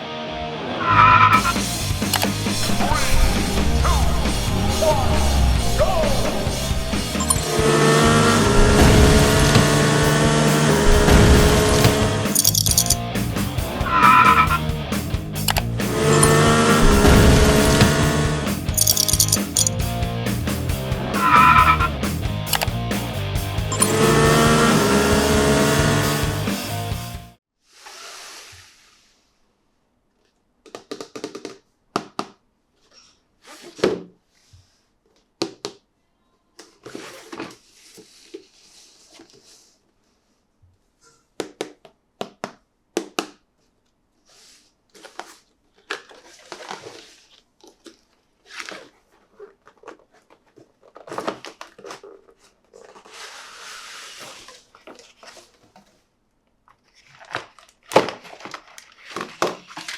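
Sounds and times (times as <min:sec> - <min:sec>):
clicks and knocks of plastic and cardboard: 0:44.9 - 0:53.1, 0:54.6 - 0:59.9
crinkling plastic: 0:44.9 - 0:53.6, 0:54.2 - 0:59.9.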